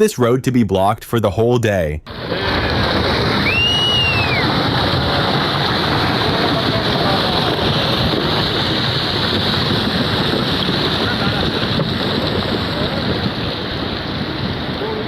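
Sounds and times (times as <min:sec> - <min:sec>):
landslide debris and water roaring: 0:02.1 - 0:15.0
high whistle: 0:03.3 - 0:04.6.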